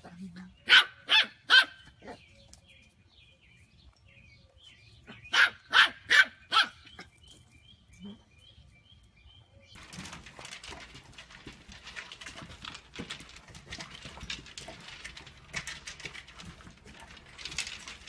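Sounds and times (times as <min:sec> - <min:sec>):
dog barking: 0:00.7 - 0:02.2, 0:05.3 - 0:06.8.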